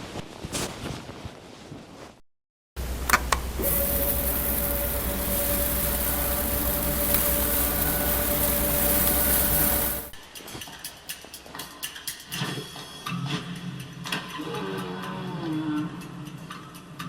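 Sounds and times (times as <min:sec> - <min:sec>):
electric motor whining: 0:03.6 - 0:10.1.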